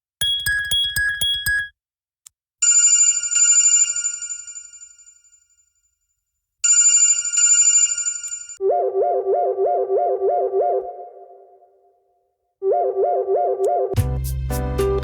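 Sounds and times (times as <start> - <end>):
bell-like phone ringtone: 0.2 - 1.8, 2.6 - 5.7, 6.6 - 8.6.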